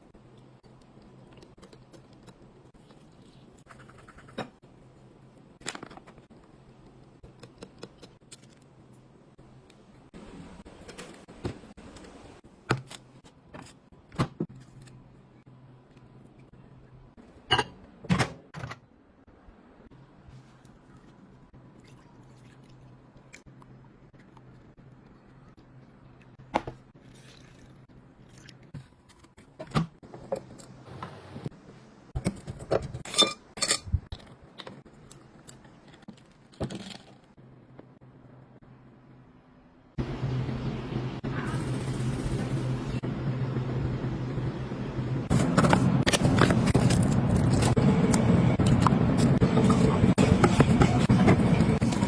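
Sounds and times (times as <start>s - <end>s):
kitchenware clinking: 17.4s - 18.8s.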